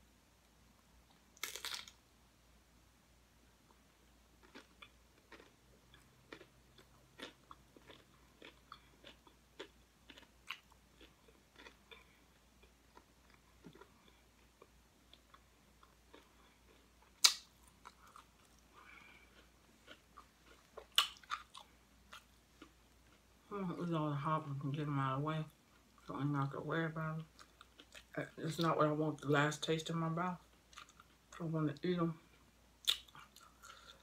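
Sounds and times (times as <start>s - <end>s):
chewing crunchy chips: 1.4s - 2.0s, 4.4s - 23.2s, 27.2s - 28.7s, 32.2s - 34.0s.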